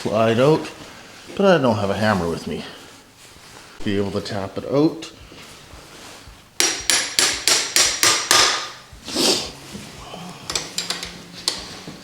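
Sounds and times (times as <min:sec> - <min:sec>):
metal-on-metal tapping: 0:06.6 - 0:08.8, 0:10.5 - 0:11.7.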